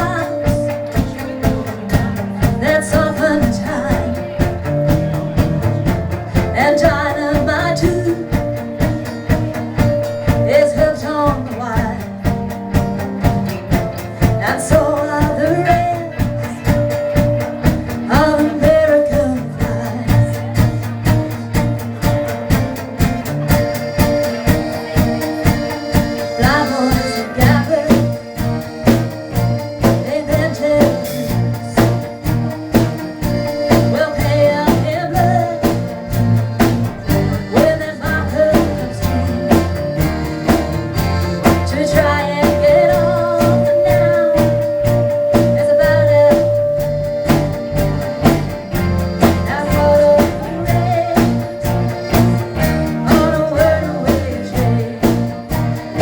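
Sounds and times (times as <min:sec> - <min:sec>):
guitars: 0:00.0 - 0:56.0
lead guitar melody: 0:00.0 - 0:56.0
walking bass: 0:00.0 - 0:56.0
drum beat: 0:38.7 - 0:56.0.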